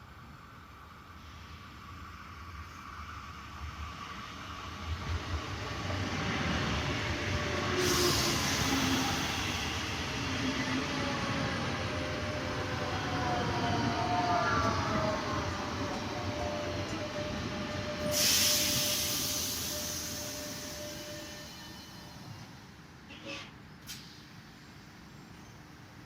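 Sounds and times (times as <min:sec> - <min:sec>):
train rumble: 0:00.0 - 0:26.0
hiss: 0:06.8 - 0:10.2, 0:18.0 - 0:22.5.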